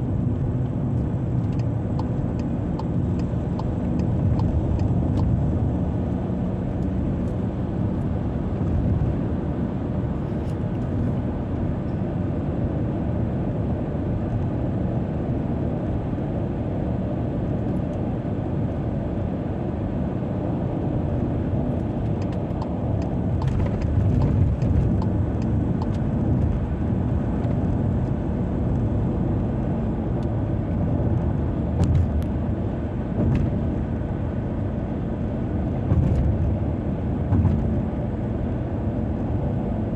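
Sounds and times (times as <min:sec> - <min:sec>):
car tyres and engine rumble: 0:00.0 - 0:39.9.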